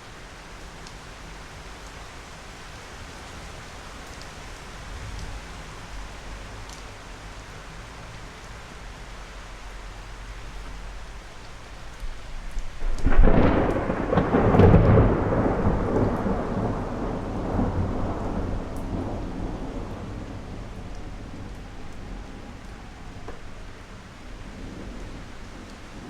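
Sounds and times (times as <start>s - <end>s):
steady rain: 0.0s - 26.0s
thunder cracking and rumbling: 12.0s - 26.0s.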